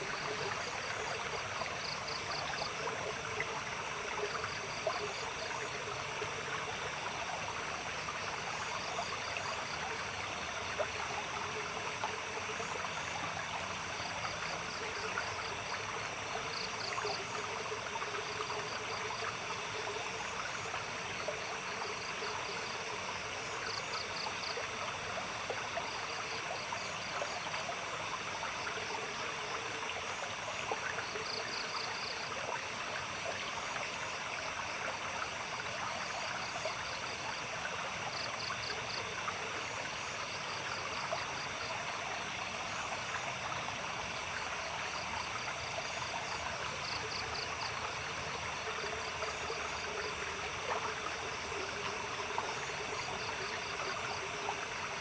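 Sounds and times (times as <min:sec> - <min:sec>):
cricket-like chirps: 0:00.0 - 0:55.0
insects high-pitched drone: 0:00.0 - 0:55.0.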